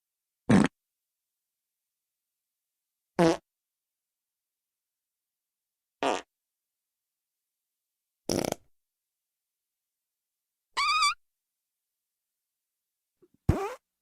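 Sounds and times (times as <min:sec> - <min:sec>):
fart sound effects: 0:00.5 - 0:00.7, 0:03.2 - 0:03.4, 0:06.0 - 0:06.3, 0:08.3 - 0:08.6, 0:13.5 - 0:13.9.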